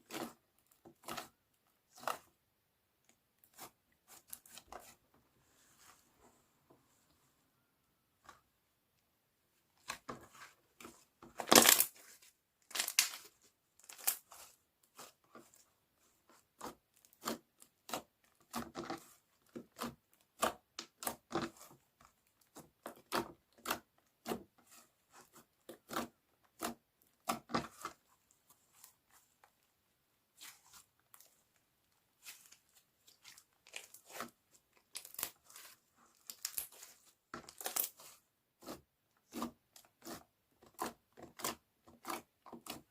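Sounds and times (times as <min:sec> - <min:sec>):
slime crackling and popping: 0:11.4 - 0:11.9, 0:12.7 - 0:14.2, 0:34.8 - 0:38.2.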